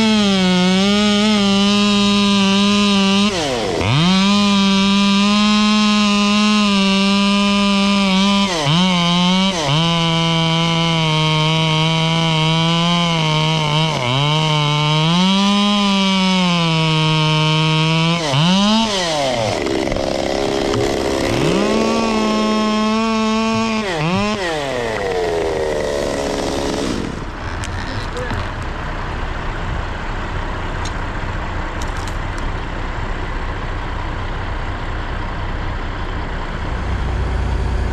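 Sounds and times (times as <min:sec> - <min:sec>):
chainsaw cutting at full throttle: 0:00.0 - 0:28.6.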